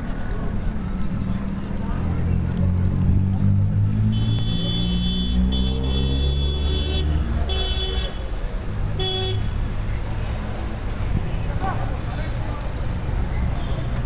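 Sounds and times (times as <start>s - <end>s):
engine rumble: 0.0s - 14.0s
vehicle horns honking: 4.0s - 8.3s, 9.0s - 9.6s.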